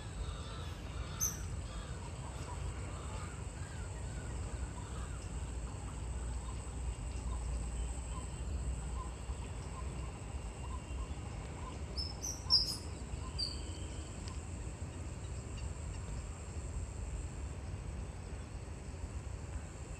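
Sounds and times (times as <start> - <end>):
bird chirping: 10.6 - 14.1.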